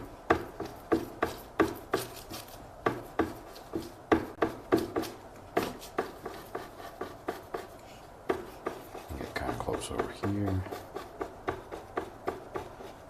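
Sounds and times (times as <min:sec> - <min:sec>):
brush tapping on canvas: 0:00.0 - 0:13.0.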